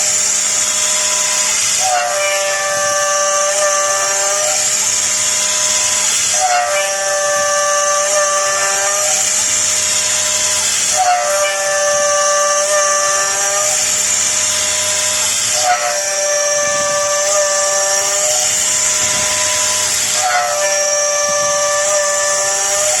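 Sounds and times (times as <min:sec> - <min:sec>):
router spindle cutting metal: 0:00.0 - 0:23.0.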